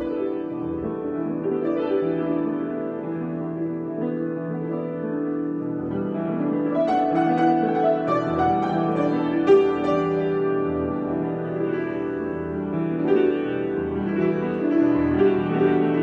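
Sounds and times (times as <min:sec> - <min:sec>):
solo piano: 0:00.0 - 0:16.0.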